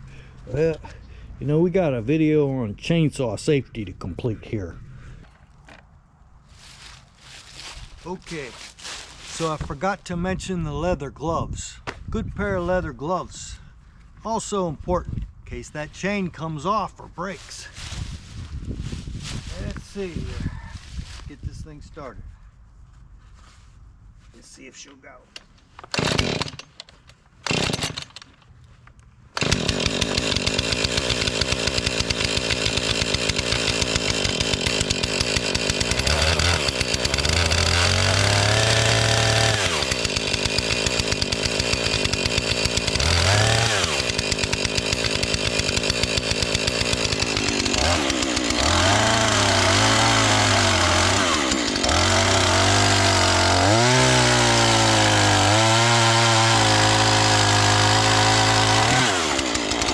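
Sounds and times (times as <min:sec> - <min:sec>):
chainsaw starter pull: 0:25.8 - 0:28.4, 0:29.4 - 0:59.9
chainsaw engine revving: 0:25.9 - 0:26.6, 0:27.4 - 0:28.2, 0:29.4 - 0:59.9.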